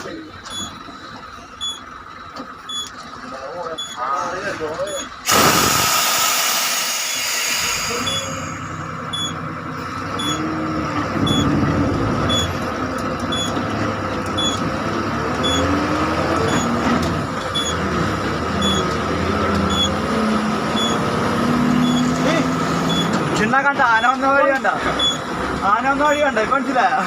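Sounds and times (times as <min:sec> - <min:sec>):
idling engine rumble: 0:00.0 - 0:05.9, 0:06.8 - 0:27.0
short electronic beeps: 0:00.5 - 0:00.8, 0:01.5 - 0:01.9, 0:02.7 - 0:02.9, 0:03.8 - 0:04.0, 0:04.8 - 0:05.2, 0:07.9 - 0:09.4, 0:10.2 - 0:10.5, 0:11.2 - 0:11.6, 0:12.3 - 0:12.6, 0:13.3 - 0:13.6, 0:14.4 - 0:14.7, 0:15.4 - 0:15.8, 0:16.4 - 0:16.8, 0:17.4 - 0:17.8, 0:18.6 - 0:18.9, 0:19.7 - 0:20.0, 0:20.8 - 0:21.0, 0:21.8 - 0:22.1, 0:22.9 - 0:23.2, 0:24.0 - 0:24.2, 0:25.0 - 0:25.3
air brakes hissing: 0:05.2 - 0:08.8.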